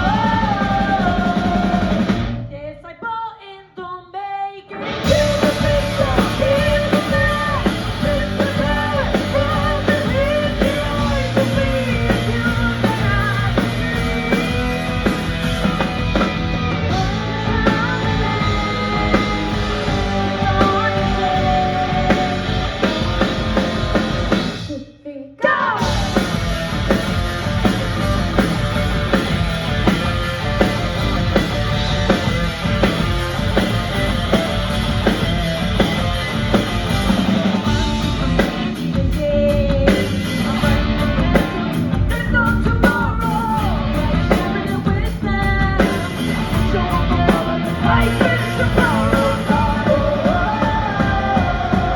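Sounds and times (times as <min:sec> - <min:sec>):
electric guitar: 0:00.0 - 0:02.5, 0:04.7 - 0:24.7, 0:25.6 - 0:51.9
drum kit: 0:00.0 - 0:02.6, 0:04.8 - 0:24.8, 0:25.6 - 0:51.9
bass guitar: 0:00.0 - 0:02.7, 0:04.8 - 0:24.8, 0:25.8 - 0:51.9
person singing: 0:00.0 - 0:15.1, 0:16.9 - 0:23.6, 0:38.8 - 0:51.9.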